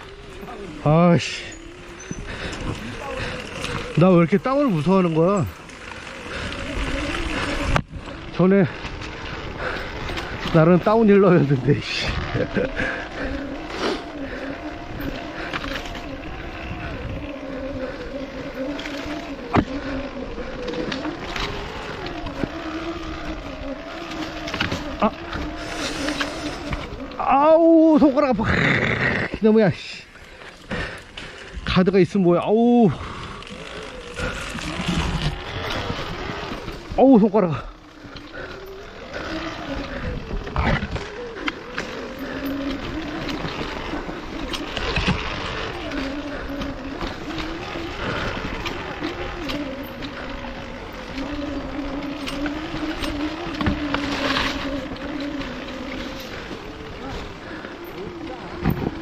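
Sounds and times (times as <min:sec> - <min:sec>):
off-road motorcycle engine: 0:00.0 - 0:59.0.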